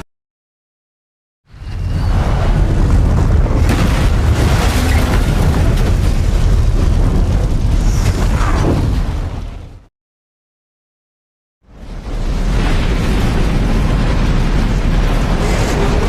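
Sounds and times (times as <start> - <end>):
heavy low rumble: 1.5 - 9.9, 11.7 - 16.0
debris crackling: 2.5 - 9.8.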